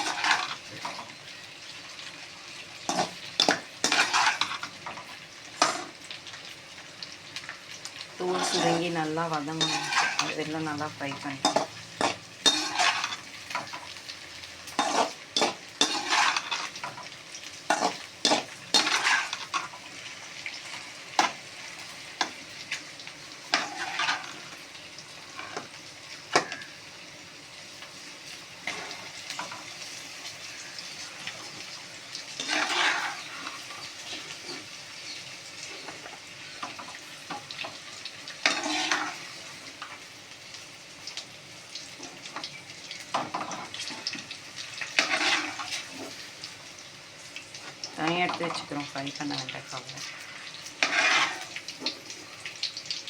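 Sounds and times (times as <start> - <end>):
faint oil sizzle: 0.0 - 53.0
spatula scraping metal pan: 2.9 - 4.6, 8.3 - 10.4, 11.4 - 13.7, 14.8 - 17.0, 17.7 - 19.7, 23.5 - 24.5, 32.4 - 34.7, 38.4 - 39.3, 45.0 - 46.2, 50.2 - 52.0.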